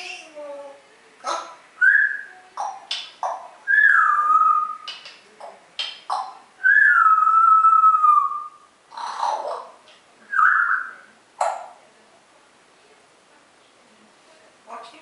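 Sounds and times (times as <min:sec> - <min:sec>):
bird whistling: 0:01.8 - 0:02.3, 0:03.7 - 0:05.0, 0:06.6 - 0:08.7, 0:10.3 - 0:11.1.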